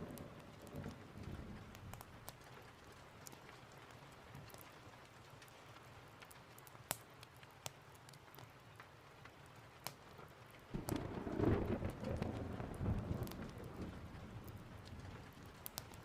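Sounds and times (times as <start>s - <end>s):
thunder rumble: 0.0s - 2.1s, 10.7s - 16.0s
steady rain: 0.0s - 16.0s.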